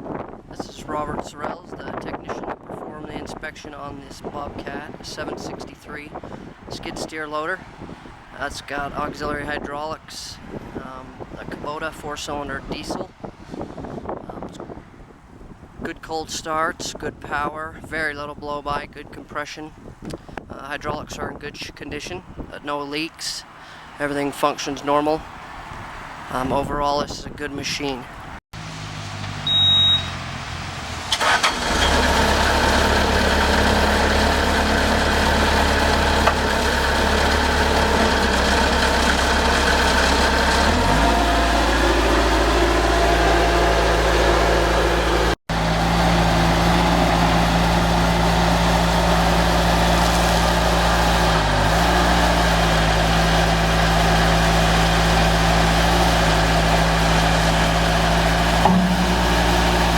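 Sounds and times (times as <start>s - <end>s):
diesel engine starting and idling: 28.6s - 59.9s.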